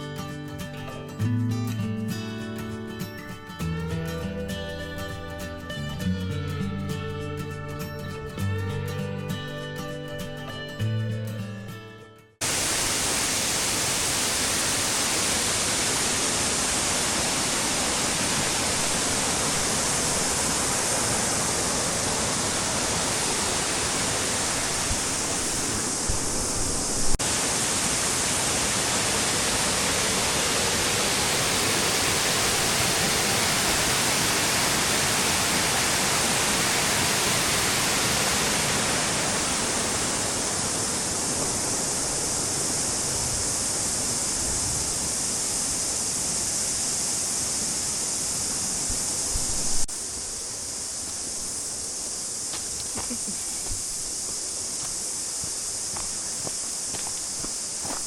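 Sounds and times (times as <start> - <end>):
waterfall rushing: 12.4 - 58.0.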